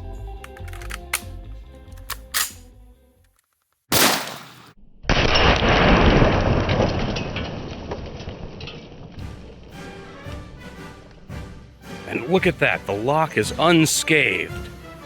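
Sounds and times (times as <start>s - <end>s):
rifle shots: 3.9s - 5.4s.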